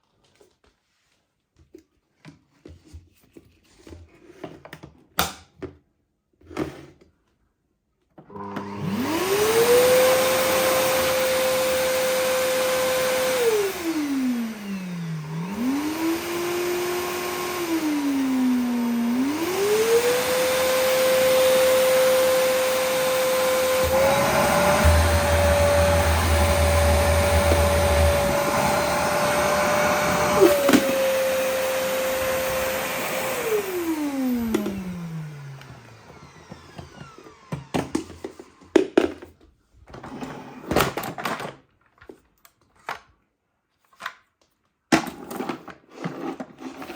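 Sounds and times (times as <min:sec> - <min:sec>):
vacuum cleaner motor whine: 0:08.2 - 0:38.8
low hum: 0:23.7 - 0:30.5.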